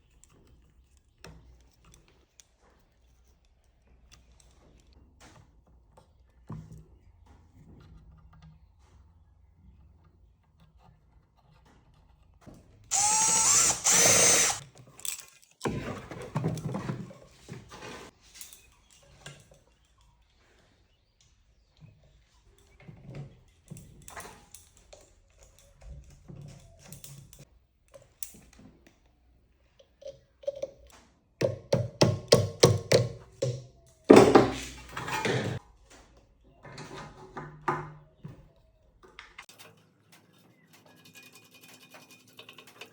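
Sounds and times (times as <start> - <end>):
power tool spinning: 12.9 - 14.6.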